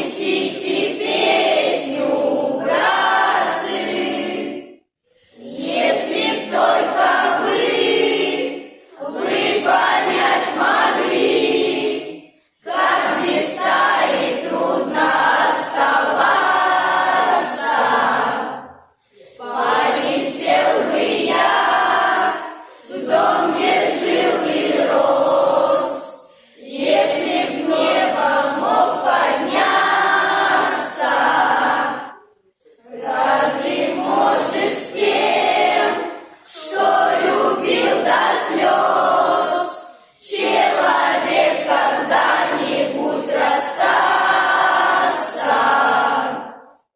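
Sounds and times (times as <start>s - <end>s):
choir singing: 0.0s - 46.9s
breaths: 5.0s - 5.4s, 18.9s - 19.4s, 26.2s - 26.6s.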